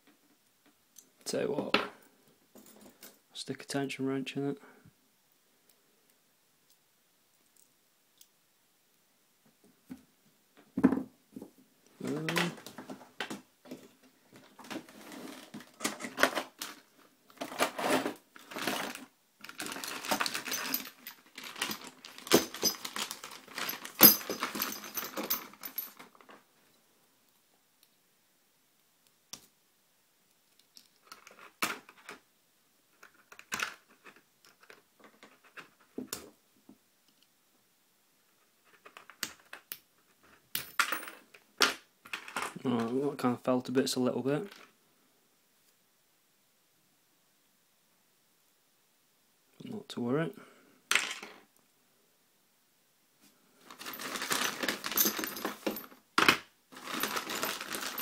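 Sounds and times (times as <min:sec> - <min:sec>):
knock: 0:10.8 - 0:11.1.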